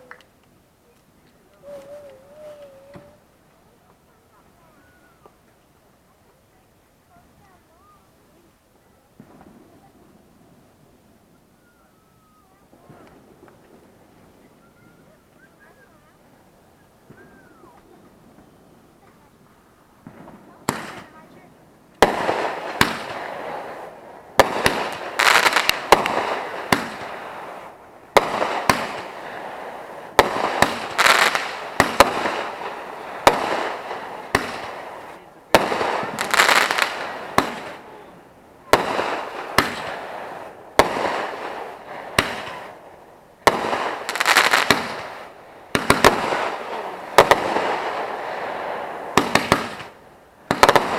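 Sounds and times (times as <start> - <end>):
fireworks crackling hiss: 0.0 - 50.9
fireworks bangs: 9.1 - 11.0, 12.0 - 16.1, 17.0 - 50.9.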